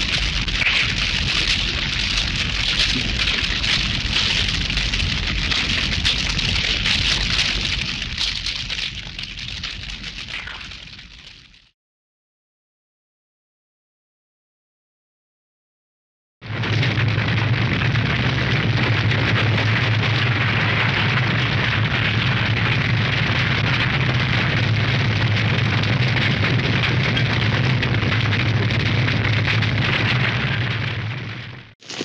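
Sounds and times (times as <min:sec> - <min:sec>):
low rumble: 0:00.0 - 0:08.7
flames crackling: 0:00.0 - 0:11.7, 0:16.5 - 0:32.0.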